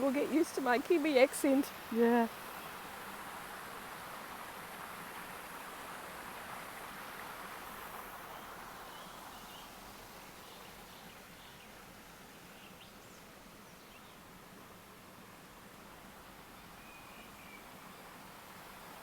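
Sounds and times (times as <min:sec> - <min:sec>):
creek running over stones: 0:00.0 - 0:19.0
faint bird chirps: 0:16.6 - 0:18.1.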